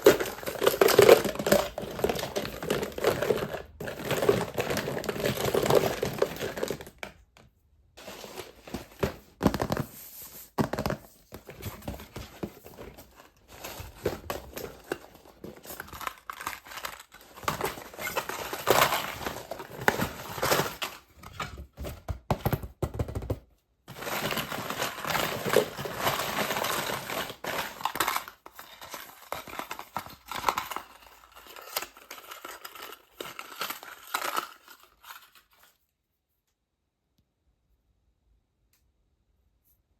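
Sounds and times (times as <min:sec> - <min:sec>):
wrappers crinkling and tearing: 0:00.0 - 0:06.8, 0:24.0 - 0:35.7.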